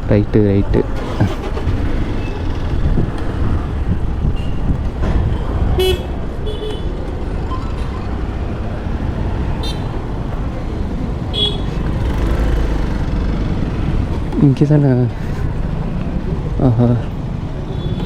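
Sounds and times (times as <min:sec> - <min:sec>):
motorcycle engine and road rumble: 0:00.0 - 0:18.0
vehicle horn toots: 0:05.8 - 0:06.9.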